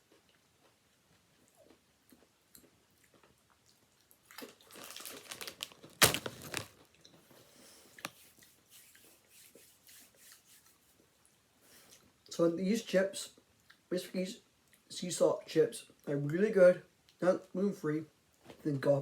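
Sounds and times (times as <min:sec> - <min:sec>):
potato chips crunching: 0:04.2 - 0:07.2.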